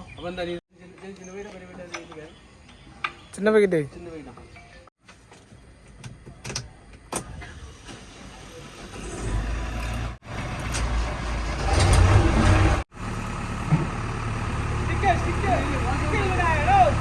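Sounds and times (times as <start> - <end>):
diesel engine rumbling: 7.4 - 17.0.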